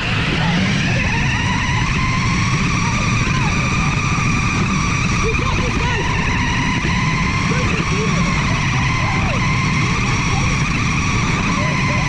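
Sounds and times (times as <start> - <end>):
electric motor whine: 0.0 - 12.0
wheels and chassis rattling: 0.0 - 12.0.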